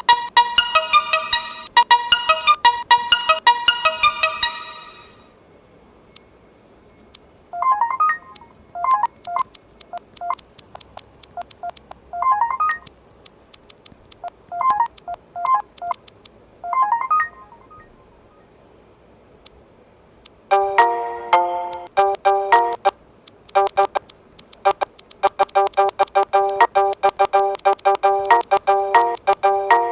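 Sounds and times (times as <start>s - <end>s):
sharp clicks: 8.4s - 12.0s, 12.7s - 16.4s, 21.7s - 29.4s.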